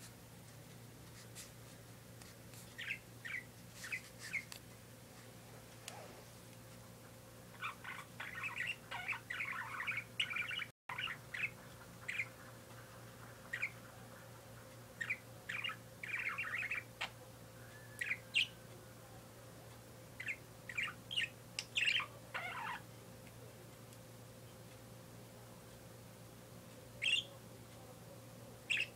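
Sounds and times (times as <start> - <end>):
parakeet chirping: 2.8 - 4.5, 7.5 - 17.2, 17.8 - 18.6, 20.2 - 22.9, 27.0 - 27.4, 28.7 - 28.9.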